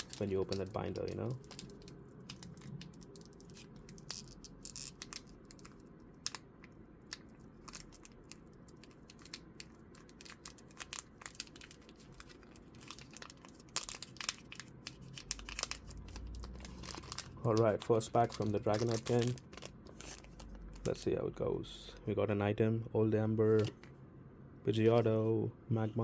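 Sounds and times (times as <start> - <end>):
foil wrappers crinkling and tearing: 0.0 - 6.4, 7.1 - 20.9.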